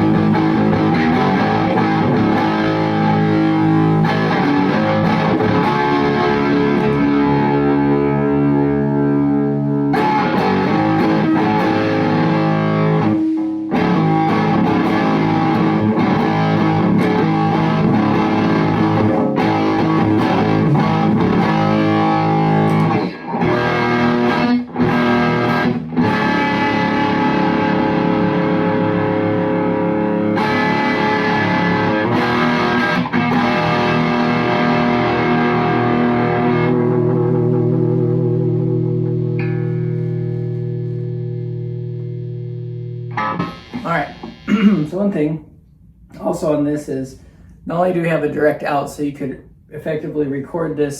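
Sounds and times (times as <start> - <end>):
overdriven electric guitar: 0.0 - 44.9.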